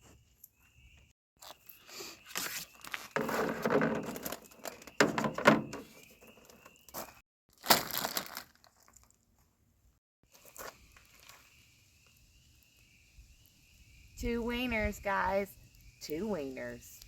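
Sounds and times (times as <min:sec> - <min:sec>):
crickets chirping: 0:00.2 - 0:07.2, 0:10.3 - 0:17.0
crinkling handling noise: 0:01.4 - 0:09.6.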